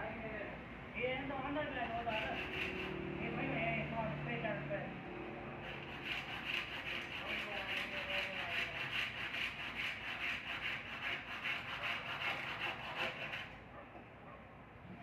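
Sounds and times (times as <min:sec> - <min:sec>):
scraping wood by hand: 0:01.9 - 0:03.0, 0:05.6 - 0:13.6.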